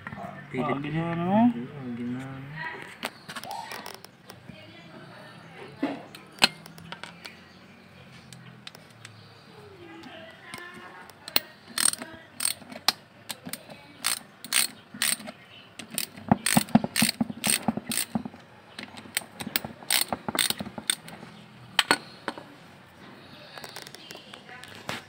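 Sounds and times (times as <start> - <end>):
ratchet wrench clicking: 10.5 - 18.2, 19.1 - 21.1.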